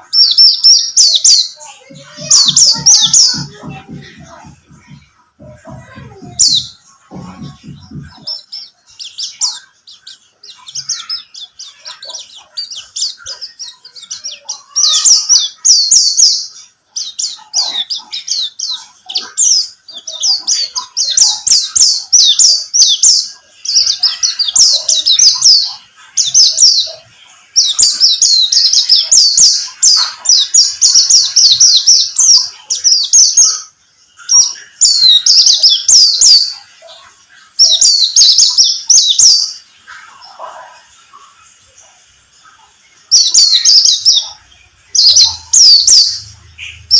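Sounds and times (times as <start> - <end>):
bird twittering: 0.0 - 27.0, 43.1 - 46.9.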